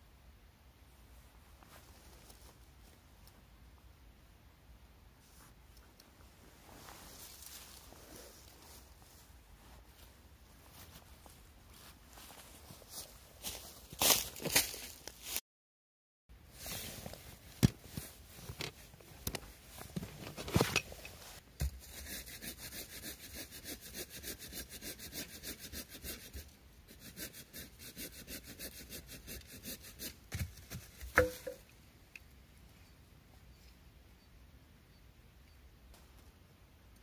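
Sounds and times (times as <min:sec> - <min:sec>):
rustling of handling: 0:05.2 - 0:15.4, 0:16.6 - 0:21.4.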